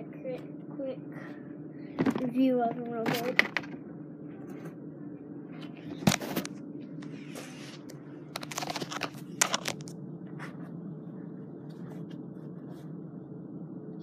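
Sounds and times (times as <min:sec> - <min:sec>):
low hum: 0:00.0 - 0:14.0
rustling handling noise: 0:05.6 - 0:10.8.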